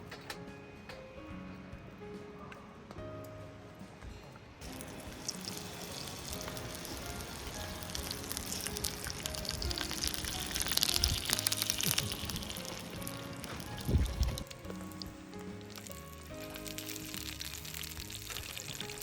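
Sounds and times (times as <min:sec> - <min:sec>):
background music: 0:00.0 - 0:19.0
food sizzling in a hot pan: 0:04.6 - 0:19.0.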